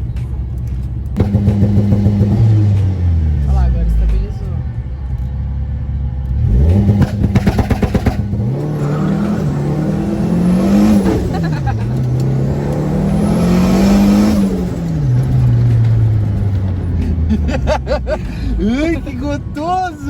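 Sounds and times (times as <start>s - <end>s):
engine revving hard: 1.2s - 3.4s, 6.4s - 17.2s.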